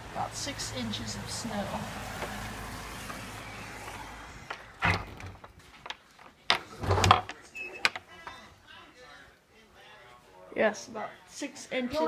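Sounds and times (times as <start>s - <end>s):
door knocks and clunks: 4.5s - 5.6s, 6.5s - 8.0s
heavy door thud: 4.7s - 5.6s.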